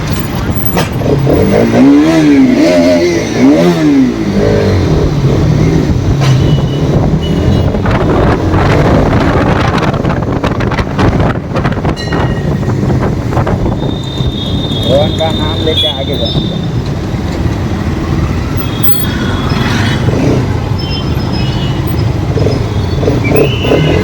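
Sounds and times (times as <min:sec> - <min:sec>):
motorcycle engine revving: 0:00.0 - 0:11.8, 0:12.5 - 0:24.0
wind noise on microphone: 0:04.7 - 0:15.4.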